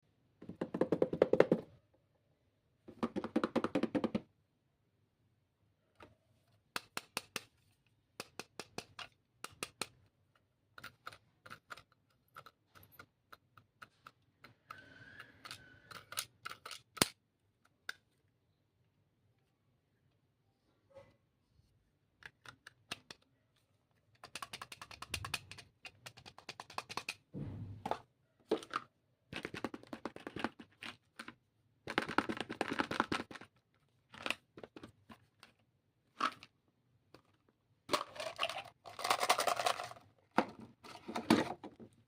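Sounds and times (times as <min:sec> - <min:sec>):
sharp clicks and taps: 0:24.2 - 0:27.3
plastic items rattling: 0:37.2 - 0:41.9.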